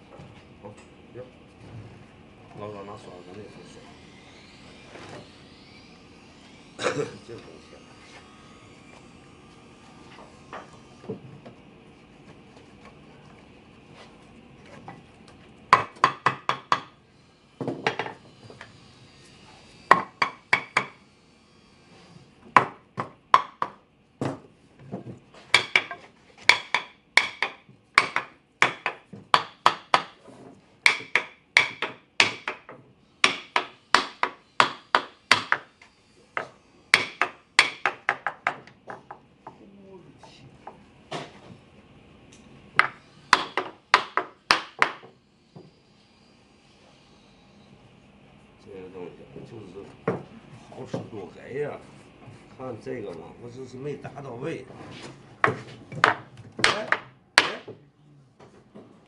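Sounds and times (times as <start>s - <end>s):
hammer striking wood: 15.7s - 16.9s, 19.9s - 21.0s, 22.5s - 24.5s, 25.5s - 30.2s, 30.8s - 35.7s, 36.3s - 39.2s, 42.8s - 45.1s, 55.4s - 57.8s.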